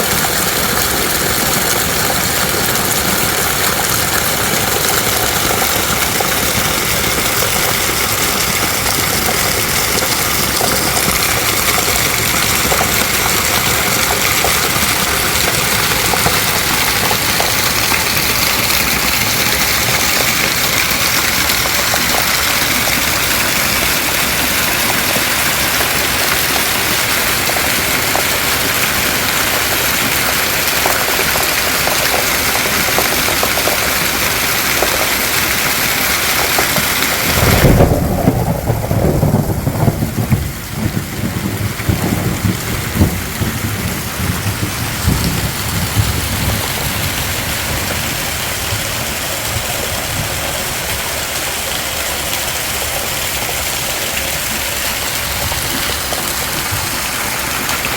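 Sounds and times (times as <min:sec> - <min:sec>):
heavy rain pouring: 0:00.0 - 0:57.9
low rumble with thuds: 0:37.2 - 0:50.7.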